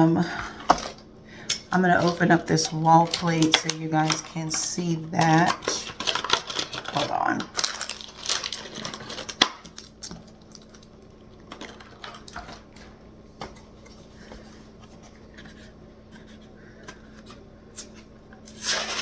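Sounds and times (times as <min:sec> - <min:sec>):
hands handling packaging: 0:00.1 - 0:19.0.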